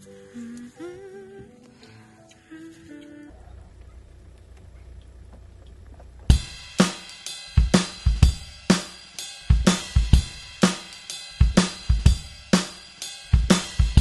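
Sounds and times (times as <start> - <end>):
drum kit playing steady beat: 6.3 - 14.0.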